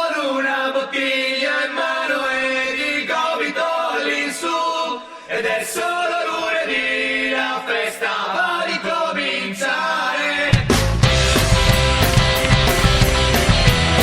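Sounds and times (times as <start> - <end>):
group singing unaccompanied chant: 0.0 - 10.6.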